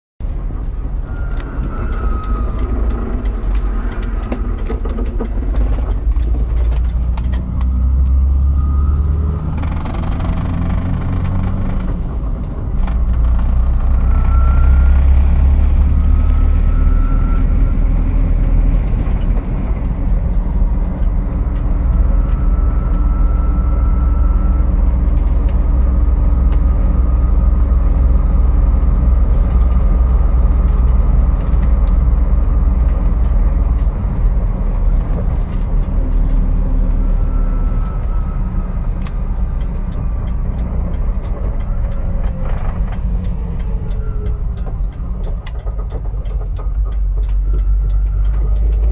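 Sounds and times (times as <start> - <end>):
engine low rumble: 0.2 - 48.9
high-pitched whine: 0.7 - 4.9, 7.4 - 11.2.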